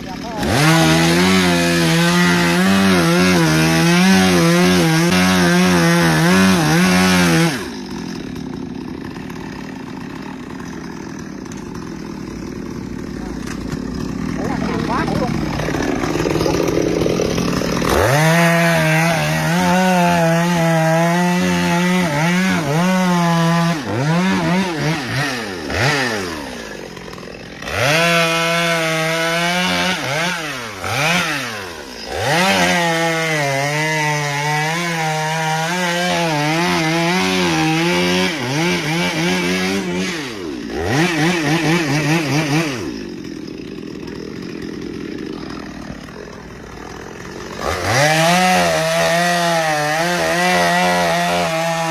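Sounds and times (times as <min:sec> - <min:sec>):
chainsaw cutting wood: 0:00.0 - 0:51.9.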